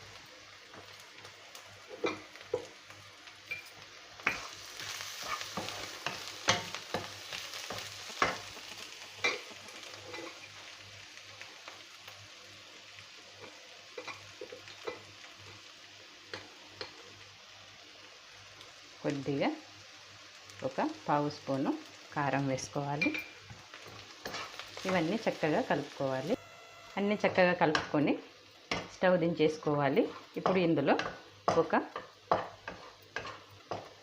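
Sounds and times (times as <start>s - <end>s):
oil sizzling: 0.0s - 34.0s
utensil scraping pot: 24.2s - 24.6s.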